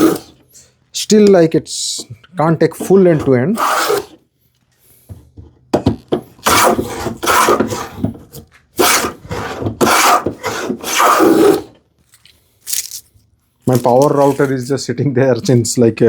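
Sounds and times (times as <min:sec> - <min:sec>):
plane cutting wood shavings: 0:00.0 - 0:00.4, 0:02.8 - 0:04.2, 0:06.5 - 0:08.0, 0:08.8 - 0:11.7.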